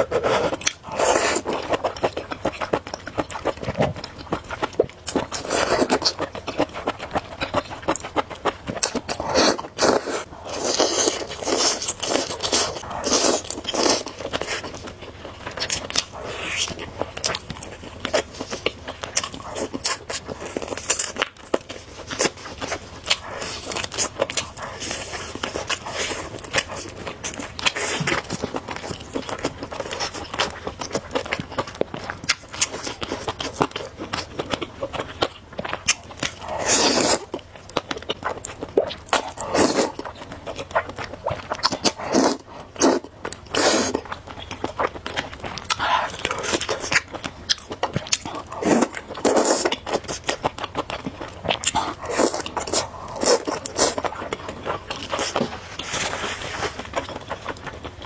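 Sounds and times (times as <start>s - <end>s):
person chewing noodles: 0.0s - 58.0s
noodle slurps: 36.6s - 37.3s, 39.3s - 40.0s, 41.9s - 44.0s.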